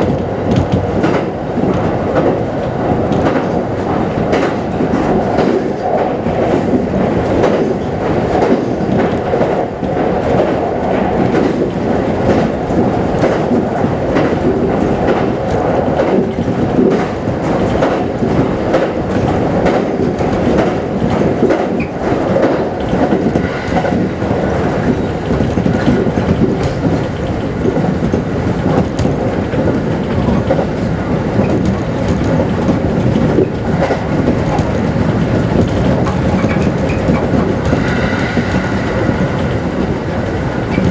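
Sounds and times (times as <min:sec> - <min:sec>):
track clicks and knocks: 0:00.0 - 0:40.9
train wheels rumbling on rail: 0:00.0 - 0:40.9.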